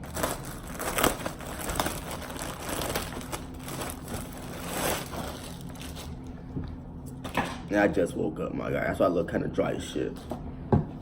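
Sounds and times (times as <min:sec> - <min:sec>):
plastic packaging crinkling: 0:00.0 - 0:06.3.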